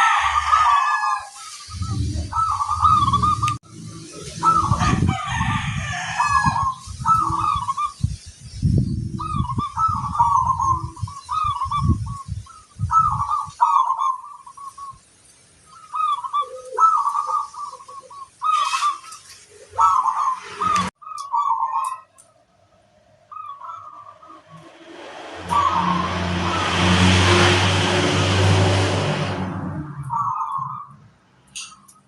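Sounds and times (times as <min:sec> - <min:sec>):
doves cooing: 0:00.0 - 0:03.6, 0:04.2 - 0:05.0, 0:06.0 - 0:08.0, 0:15.7 - 0:22.2
low rumbling noise: 0:01.6 - 0:13.3, 0:22.5 - 0:31.3.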